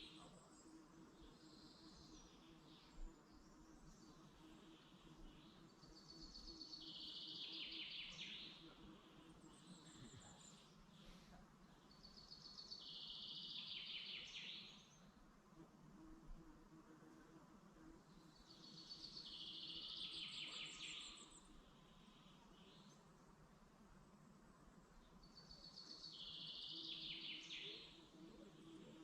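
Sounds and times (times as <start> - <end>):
bird singing song phrase: 0.0 - 15.1, 18.1 - 21.6, 25.0 - 29.0.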